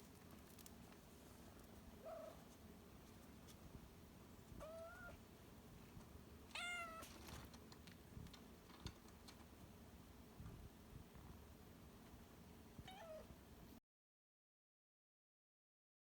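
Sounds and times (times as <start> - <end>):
kitten meowing: 4.6 - 5.2, 6.6 - 7.0, 12.8 - 13.3.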